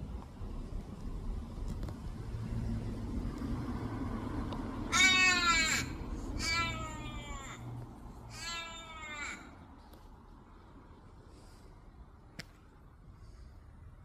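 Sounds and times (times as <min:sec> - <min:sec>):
bird wailing calls: 0:04.9 - 0:07.7, 0:08.3 - 0:09.6.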